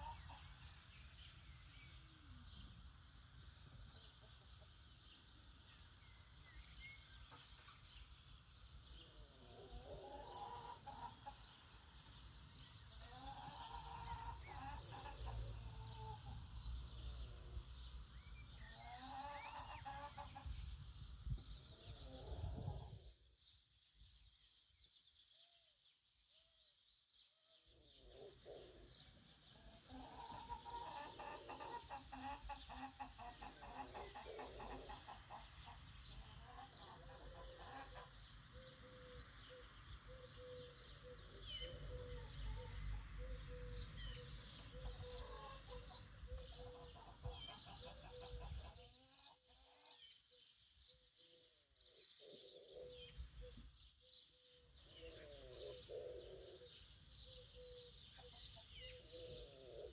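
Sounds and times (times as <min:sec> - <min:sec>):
chickens clucking: 0:00.0 - 0:00.6, 0:08.9 - 0:12.2, 0:12.8 - 0:17.6, 0:18.7 - 0:20.8, 0:28.0 - 0:39.7, 0:40.3 - 0:50.1
small birds chirping: 0:00.0 - 0:59.9.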